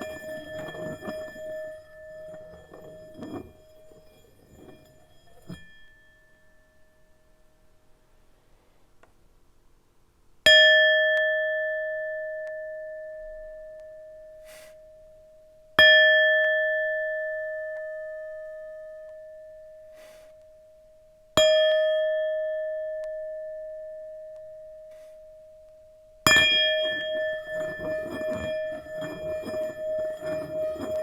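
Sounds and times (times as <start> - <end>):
singing bowl ringing: 0.0 - 7.7, 15.1 - 31.0.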